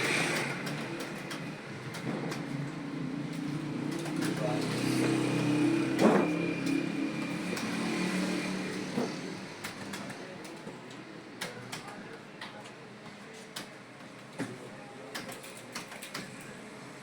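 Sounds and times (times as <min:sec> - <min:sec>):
keyboard keys clicking: 0:03.3 - 0:04.8.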